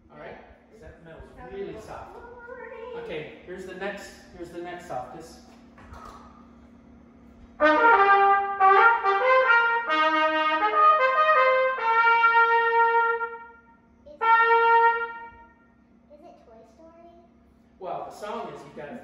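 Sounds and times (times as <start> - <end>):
trumpet playing: 7.6 - 15.6.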